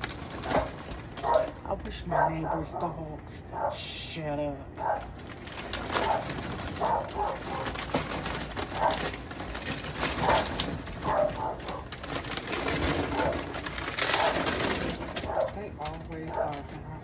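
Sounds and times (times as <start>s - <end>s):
distant dogs barking: 0.3s - 4.0s, 4.7s - 5.2s, 5.8s - 9.2s, 10.1s - 12.2s, 12.8s - 17.0s.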